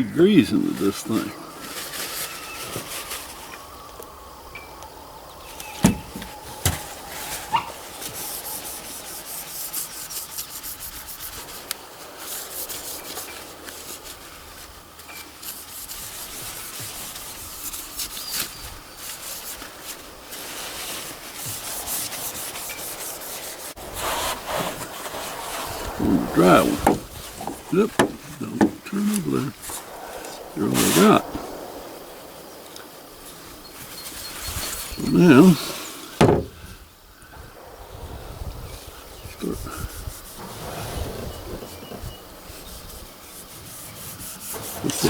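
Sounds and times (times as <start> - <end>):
rag wiping metal barrel: 20.5 - 31.2
sharp knocks: 36.2 - 36.7.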